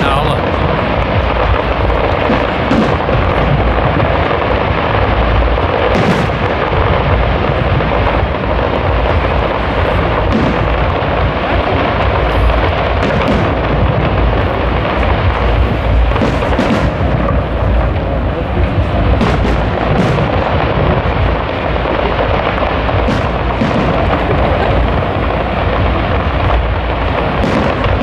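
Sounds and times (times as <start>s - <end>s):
fireworks rumbling: 0.0s - 28.0s
sharp firework bangs: 0.0s - 28.0s.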